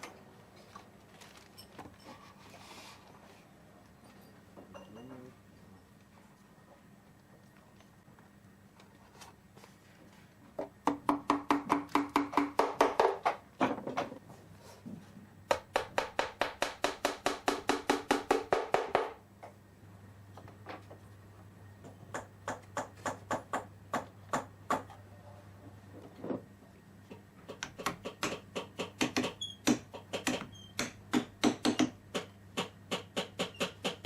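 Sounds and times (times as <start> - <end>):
small hammer tapping: 27.5 - 34.0.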